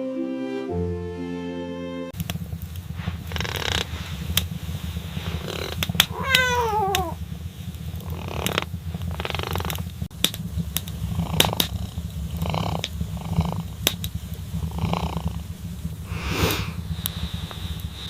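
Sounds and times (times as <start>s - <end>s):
kitten purring: 2.2s - 18.0s
sharp clicks: 8.3s - 11.8s.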